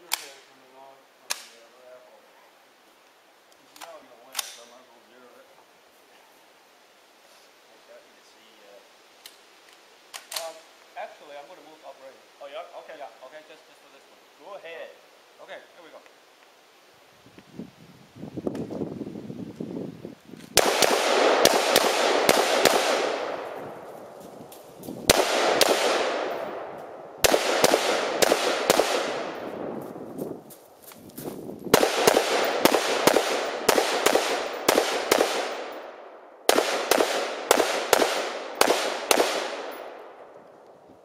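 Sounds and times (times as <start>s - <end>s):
rapid gunshots with echo: 20.6s - 23.7s, 25.1s - 29.5s, 31.7s - 35.8s, 36.5s - 39.9s.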